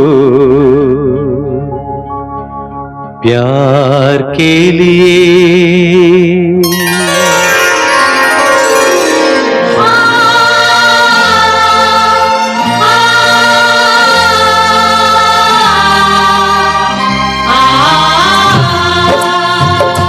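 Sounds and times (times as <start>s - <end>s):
instrumental film music: 6.6s - 20.0s.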